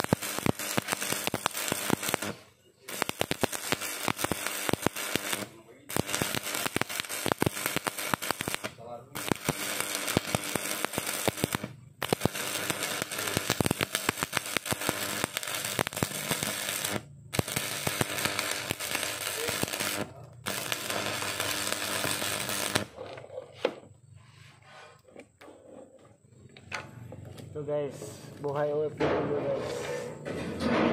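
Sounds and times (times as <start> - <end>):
crackling welding arc: 0.0 - 23.0.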